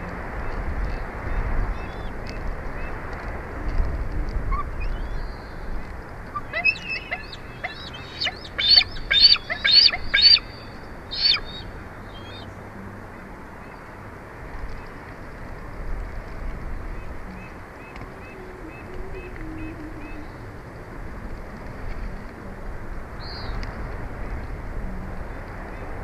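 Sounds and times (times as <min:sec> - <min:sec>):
steady background hiss: 0:00.0 - 0:26.0
eagle high piping calls: 0:06.3 - 0:12.5.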